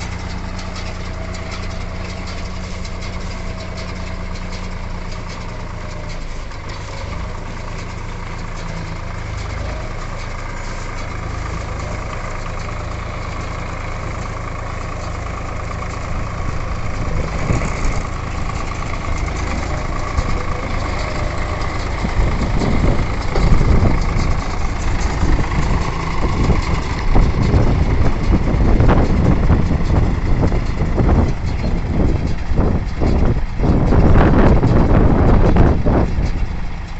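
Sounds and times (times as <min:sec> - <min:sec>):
tractor diesel engine running: 0:00.0 - 0:36.9.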